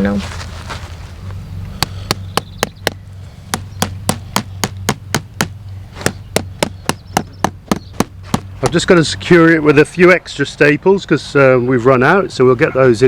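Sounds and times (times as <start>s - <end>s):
hammer striking metal staples: 1.8s - 8.8s.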